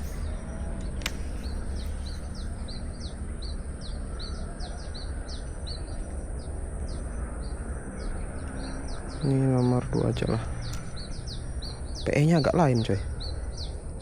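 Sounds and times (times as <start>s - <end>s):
low outdoor rumble: 0.0s - 14.0s
small bird chirping: 0.0s - 14.0s
sharp click: 0.8s - 2.2s.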